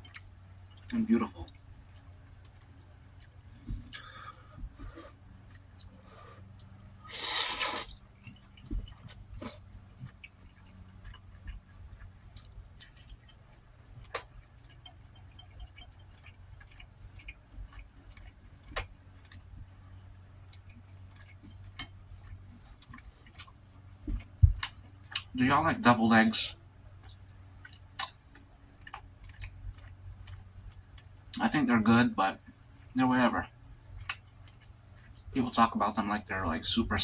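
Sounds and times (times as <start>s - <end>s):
person chewing: 0.0s - 25.3s, 27.0s - 31.3s
breath noise: 3.5s - 5.2s, 5.9s - 8.0s.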